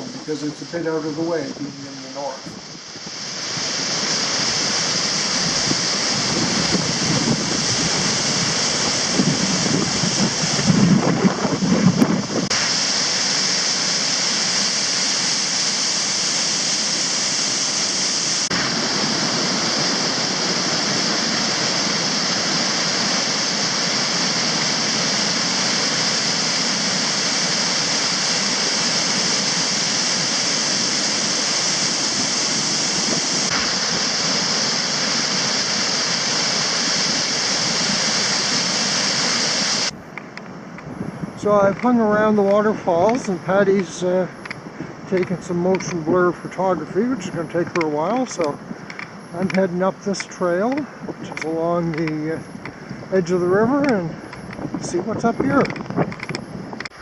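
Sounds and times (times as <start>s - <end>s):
low rumbles: 0.0s - 12.6s, 39.8s - 57.0s
waterfall rushing: 0.0s - 57.0s.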